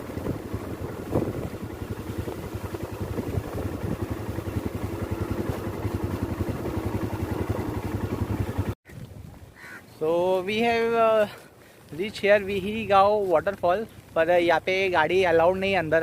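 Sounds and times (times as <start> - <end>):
motorcycle engine running: 0.0 - 8.8, 10.0 - 16.0
rushing air: 0.0 - 8.8.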